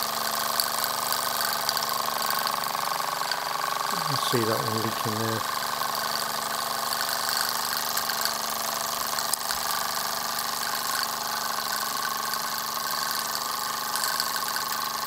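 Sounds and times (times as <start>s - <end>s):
toy steam engine chattering: 0.1s - 15.0s
steam hissing: 3.8s - 5.4s.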